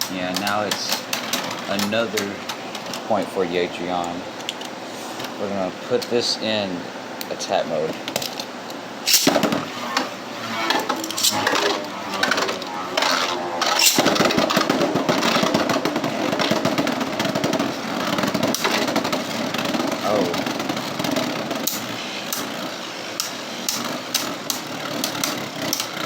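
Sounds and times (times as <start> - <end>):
spinning tops whirring and clattering: 0.0 - 5.3, 7.9 - 26.0
spinning tops launched: 9.0 - 26.0.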